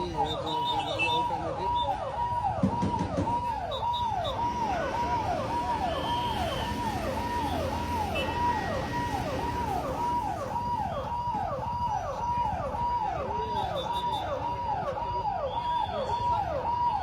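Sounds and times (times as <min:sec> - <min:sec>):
emergency siren wailing: 0:00.0 - 0:17.0.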